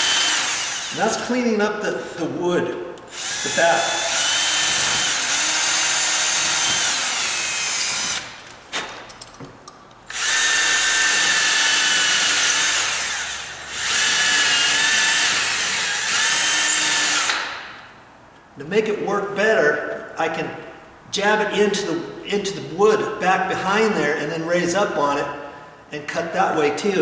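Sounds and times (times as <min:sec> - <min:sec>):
power drill spinning: 0:00.0 - 0:01.3, 0:03.1 - 0:08.4, 0:10.1 - 0:17.5.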